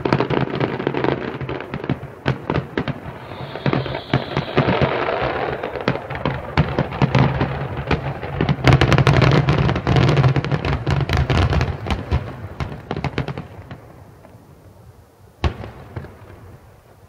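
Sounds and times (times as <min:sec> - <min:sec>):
fireworks crackling barrage: 0:00.0 - 0:14.4
loud firework bang: 0:01.8 - 0:08.9.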